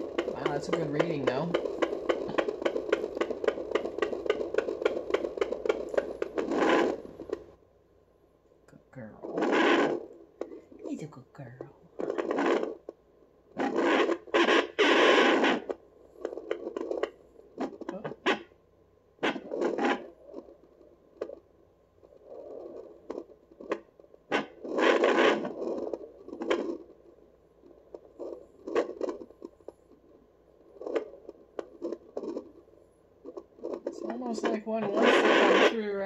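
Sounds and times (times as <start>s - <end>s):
scratchy scraping doppler noise: 0.0s - 7.4s, 33.3s - 36.0s.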